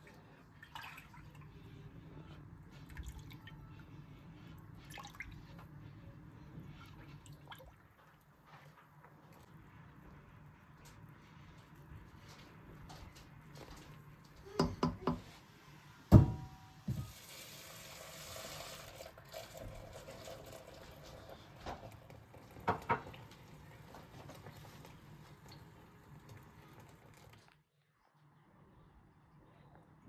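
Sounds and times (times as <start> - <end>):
dishes knocking: 14.5 - 15.3, 16.1 - 17.2
water running from tap: 16.2 - 27.4.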